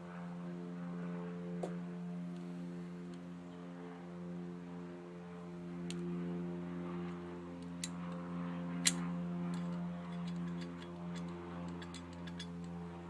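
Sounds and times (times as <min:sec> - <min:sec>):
steady background hum: 0:00.0 - 0:13.0
metal clutch plates clinking: 0:09.6 - 0:12.7.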